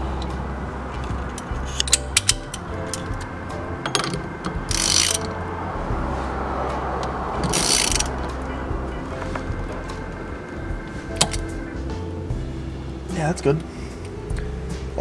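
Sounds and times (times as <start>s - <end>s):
soft background music: 0.0s - 15.0s
socket ratchet clicking: 1.3s - 3.1s, 3.8s - 5.3s, 7.4s - 8.1s.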